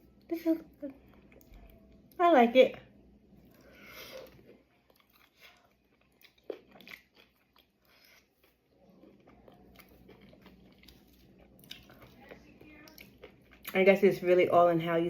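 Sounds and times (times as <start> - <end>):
person chewing with crunches: 3.4 - 13.8.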